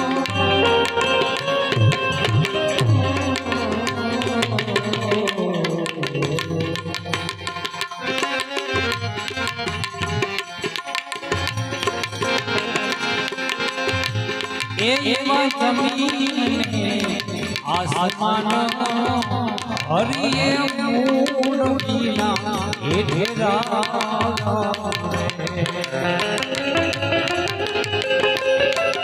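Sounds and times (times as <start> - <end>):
person singing: 0.0 - 7.5, 14.8 - 27.6
harmonium melody: 0.0 - 29.0
tabla strokes: 0.0 - 29.0.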